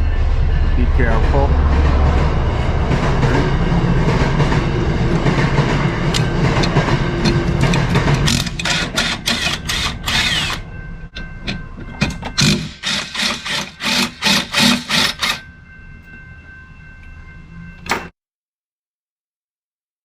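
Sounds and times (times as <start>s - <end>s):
hand ratchet clicking: 6.1s - 10.6s, 11.5s - 15.4s.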